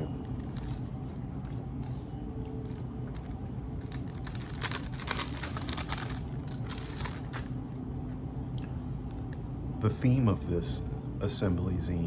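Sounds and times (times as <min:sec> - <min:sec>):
low steady hum: 0:00.0 - 0:12.0
paper rustling and crinkling: 0:00.3 - 0:07.8
quick paper crackles: 0:02.6 - 0:07.5.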